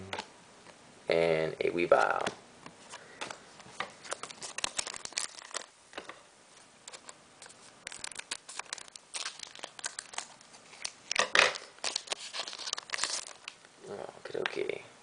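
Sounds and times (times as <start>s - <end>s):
cards rustling: 1.9s - 13.6s
foil wrapper crinkling: 3.9s - 5.7s, 6.8s - 13.6s.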